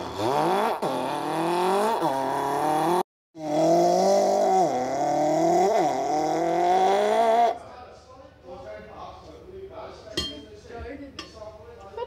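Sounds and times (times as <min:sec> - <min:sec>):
person imitating car engine: 0:00.0 - 0:07.6.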